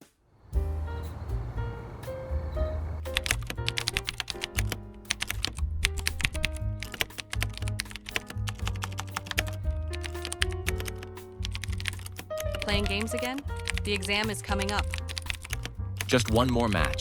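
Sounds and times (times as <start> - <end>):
keyboard clacking: 0.6 - 17.0
music with pulsing bass: 4.4 - 17.0.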